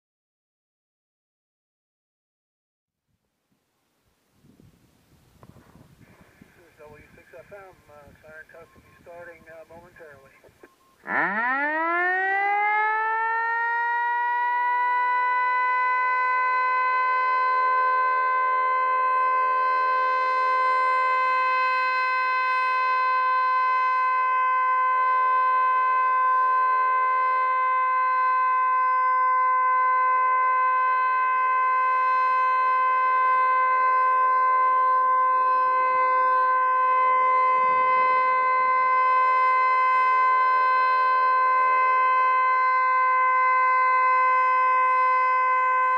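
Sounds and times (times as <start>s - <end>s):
warning siren winding up: 10.9s - 45.9s.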